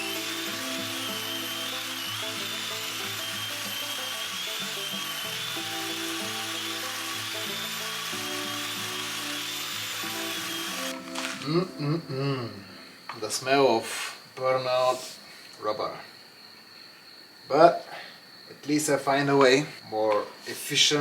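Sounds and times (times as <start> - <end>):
angle grinder whining on rubber: 0.0 - 11.6
background music: 0.0 - 13.0.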